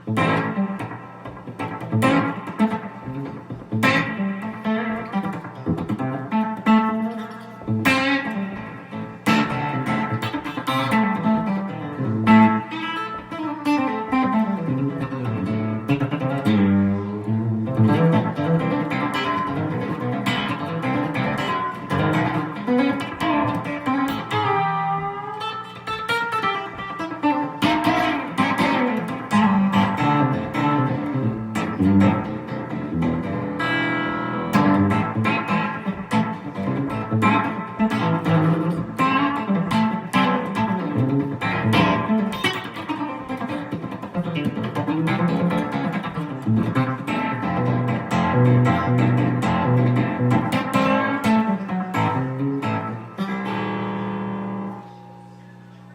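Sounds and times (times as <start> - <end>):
fuzzy electric guitar riff: 0.0 - 55.9.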